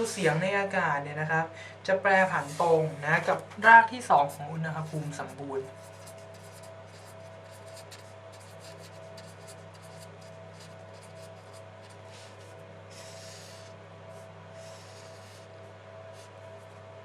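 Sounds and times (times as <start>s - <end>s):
steady electrical hum: 0.0s - 17.0s
pen scratching on paper: 4.8s - 16.7s.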